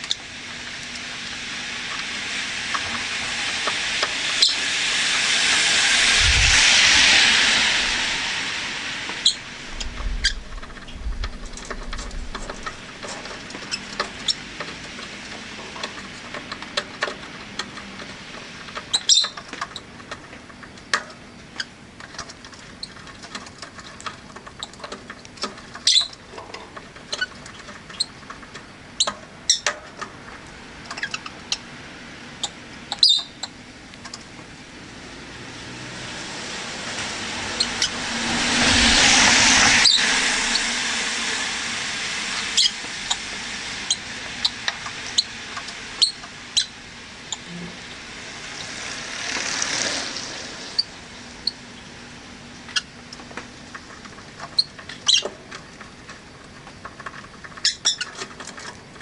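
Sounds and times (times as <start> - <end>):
faint street noise: 0.0 - 59.0
passing vehicle: 1.6 - 13.0, 34.6 - 46.0, 47.0 - 53.0
birds chirping and clicking: 9.2 - 30.1, 30.8 - 31.7, 32.4 - 34.2, 39.8 - 40.1, 42.4 - 43.2, 43.8 - 47.5, 52.7 - 58.9
loud high bird calls: 18.9 - 19.4, 25.8 - 26.2, 32.9 - 33.5, 39.7 - 40.8.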